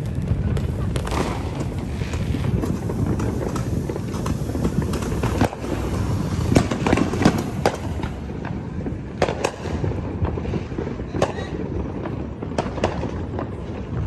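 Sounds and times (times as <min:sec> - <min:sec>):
fireworks bangs and crackling: 0:00.0 - 0:14.0
low rumble: 0:00.2 - 0:09.2.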